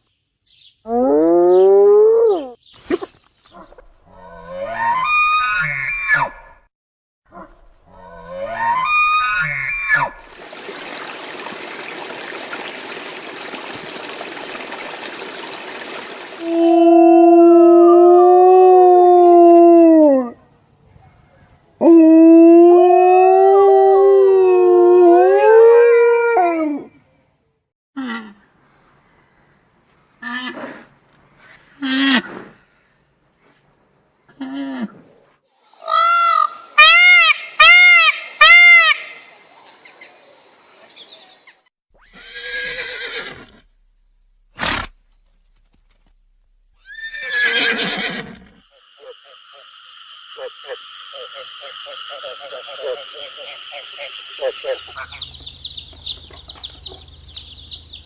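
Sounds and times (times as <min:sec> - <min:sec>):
frogs calling: 0:10.3 - 0:16.7, 0:48.7 - 0:55.9
horse whinnying: 0:42.0 - 0:43.7, 0:46.8 - 0:48.6.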